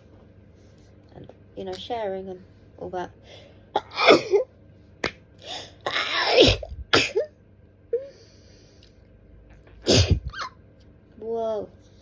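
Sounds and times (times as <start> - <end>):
person sneezing: 5.6 - 7.3, 9.8 - 10.4.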